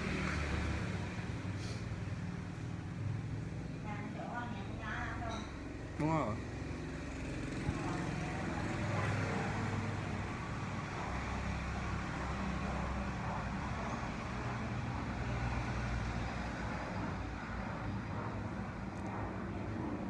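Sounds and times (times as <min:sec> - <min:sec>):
hiss of traffic tyres: 0:01.4 - 0:02.1.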